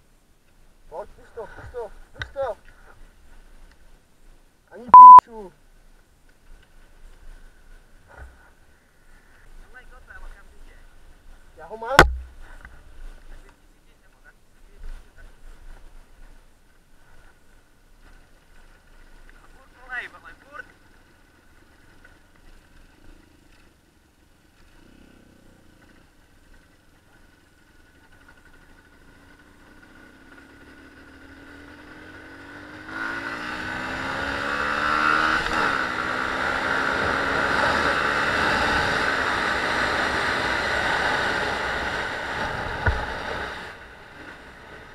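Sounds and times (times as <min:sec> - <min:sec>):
motorcycle engine revving: 0:27.6 - 0:44.9.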